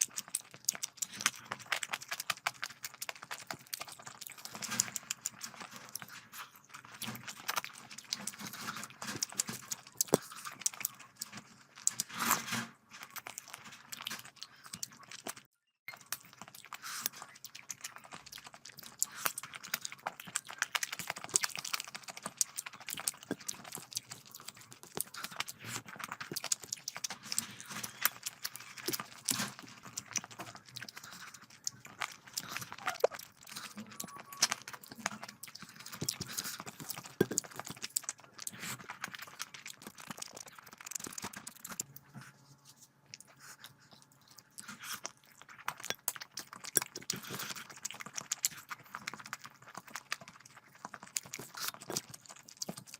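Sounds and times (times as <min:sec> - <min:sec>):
close chewing and mouth sounds: 0:00.0 - 0:52.9.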